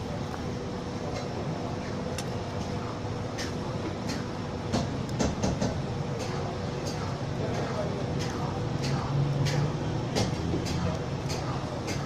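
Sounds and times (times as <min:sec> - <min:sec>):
mechanical rumble with hum: 0:00.0 - 0:12.0.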